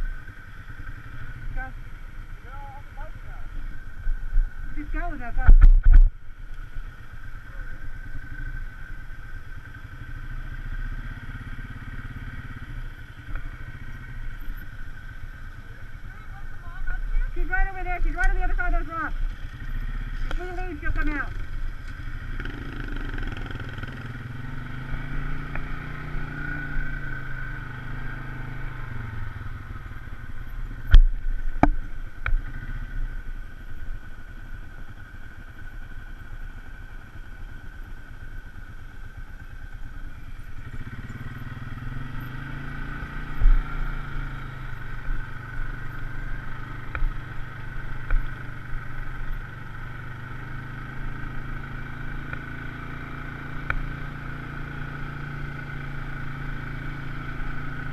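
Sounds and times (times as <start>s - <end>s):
vehicle engine revving: 17.2s - 33.2s, 40.3s - 57.9s.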